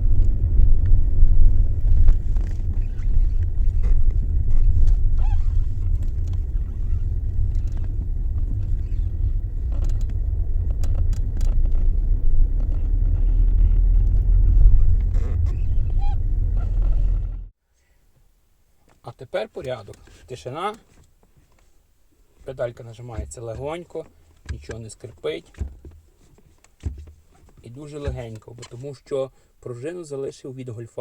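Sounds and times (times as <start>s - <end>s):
car engine rumbling: 0.0s - 17.6s.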